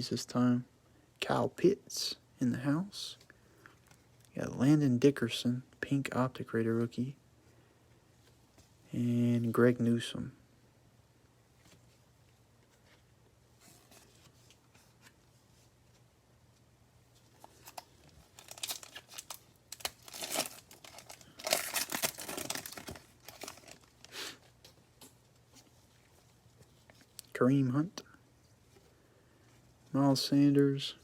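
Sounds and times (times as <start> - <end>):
wrapper tearing and crackling: 17.4 - 24.1.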